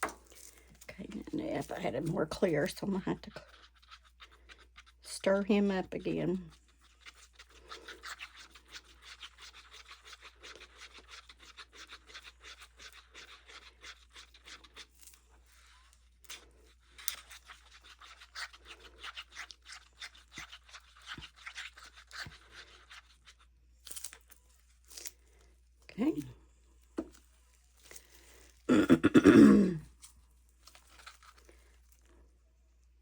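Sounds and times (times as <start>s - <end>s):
stick scraping inside plastic cup: 0.0s - 25.2s.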